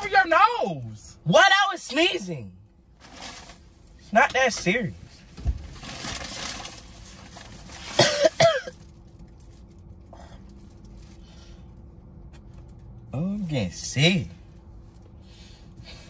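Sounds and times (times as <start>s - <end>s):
person coughing: 7.9s - 8.8s.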